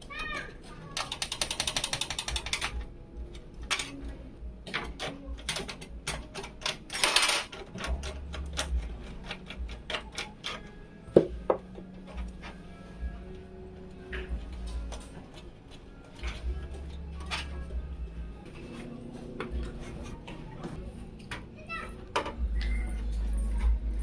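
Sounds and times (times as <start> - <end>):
computer parts clicking and knocking: 0.9 - 12.6
ratcheting clicks: 1.0 - 2.8.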